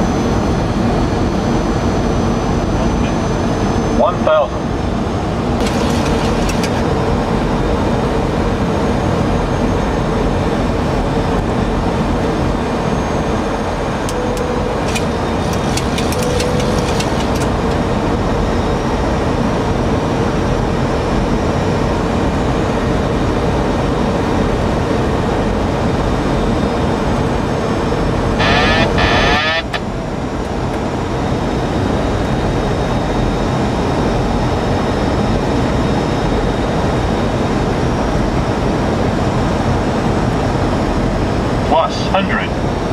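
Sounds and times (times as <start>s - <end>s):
constant engine hum: 0.0s - 42.9s
brief high-pitched sound: 28.4s - 29.8s.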